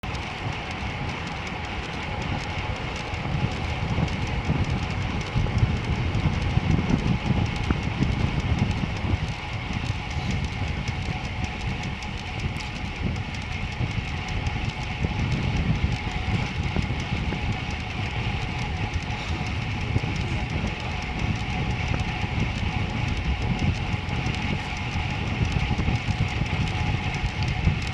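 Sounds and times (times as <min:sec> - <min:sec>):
bicycle rolling noise: 0:00.0 - 0:27.9
faint steady whine: 0:00.0 - 0:27.9
wind buffeting microphone: 0:00.0 - 0:27.9.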